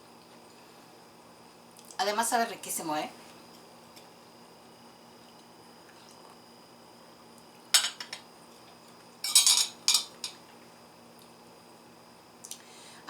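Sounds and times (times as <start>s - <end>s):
cutlery clinking on dishware: 7.8s - 8.2s, 9.2s - 10.4s.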